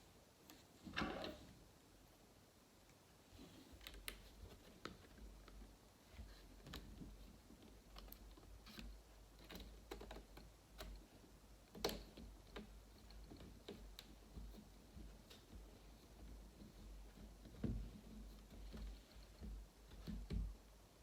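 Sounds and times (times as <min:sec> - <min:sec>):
laptop parts clicking and tapping: 0:06.6 - 0:11.1.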